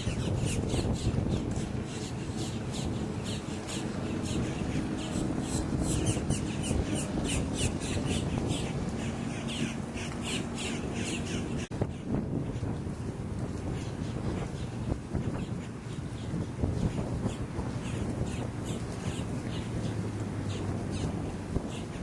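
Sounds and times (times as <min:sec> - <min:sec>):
birds harsh calls: 0:00.0 - 0:11.7.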